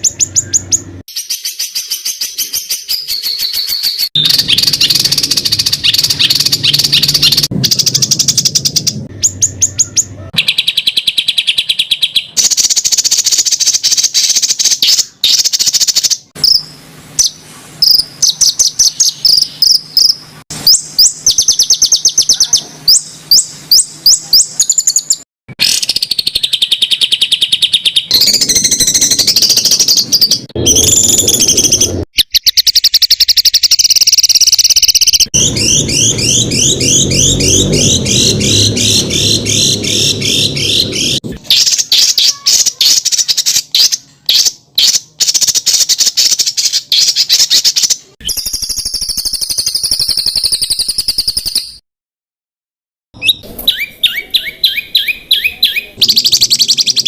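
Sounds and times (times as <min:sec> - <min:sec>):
fast repeated high bird notes: 0:00.0 - 0:43.9
songbird chattering trills: 0:00.0 - 0:51.1, 0:53.2 - 0:57.0.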